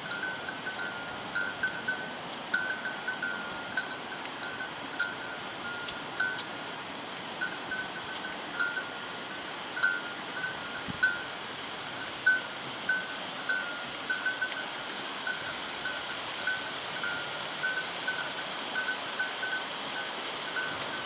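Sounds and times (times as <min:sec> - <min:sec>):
bear bell jingling: 0:00.0 - 0:06.6, 0:07.4 - 0:14.7
steady background hiss: 0:00.0 - 0:21.0.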